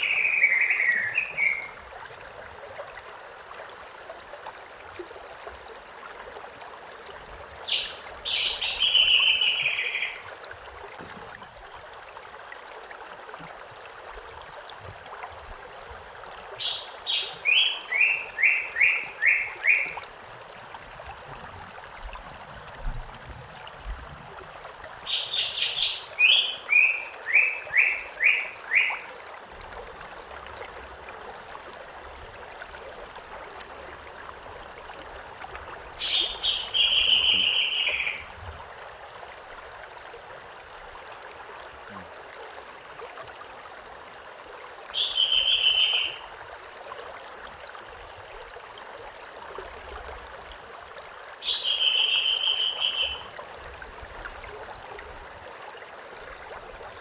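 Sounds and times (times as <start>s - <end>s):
songbird singing: 0.0s - 1.8s, 7.6s - 10.2s, 16.6s - 20.0s, 25.0s - 29.1s, 36.0s - 38.3s, 44.9s - 46.3s, 51.4s - 53.3s
stream flowing: 0.0s - 57.0s.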